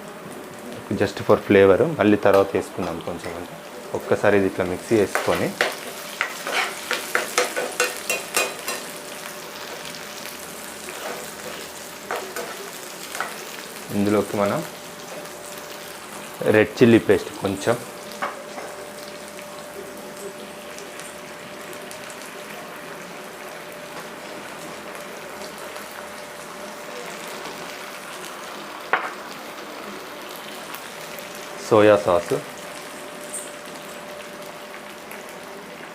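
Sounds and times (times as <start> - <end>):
vegetables sizzling in oil: 0.0 - 35.9
spoon scraping pan: 5.1 - 8.9.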